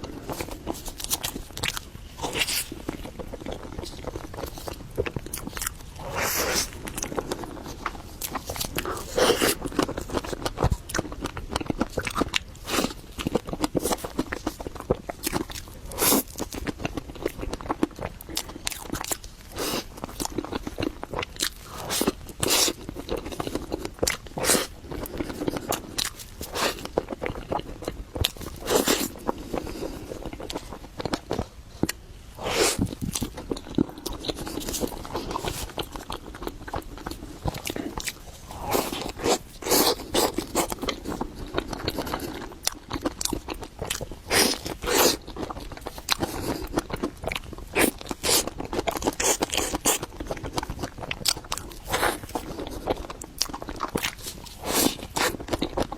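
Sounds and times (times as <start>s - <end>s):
person biting and chewing cake: 0.0s - 55.9s.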